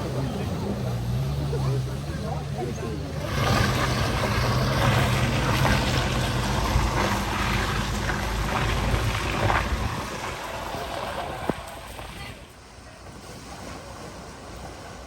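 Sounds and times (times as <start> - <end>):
car engine running: 0.0 - 12.5
water splashing and rushing: 0.0 - 15.0.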